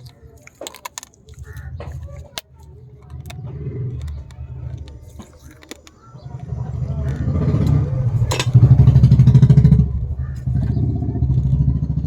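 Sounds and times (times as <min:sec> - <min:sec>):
sharp crunch: 0:00.0 - 0:09.4
vehicle engine running: 0:01.4 - 0:12.0.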